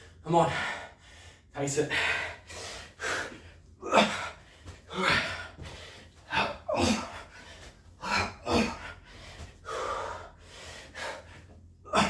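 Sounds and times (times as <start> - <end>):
man breathing hard: 0.0 - 12.0.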